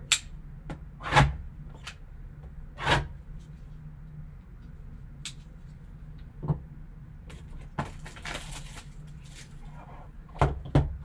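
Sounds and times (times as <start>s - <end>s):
wrapping rustling and crinkling: 7.6s - 9.8s.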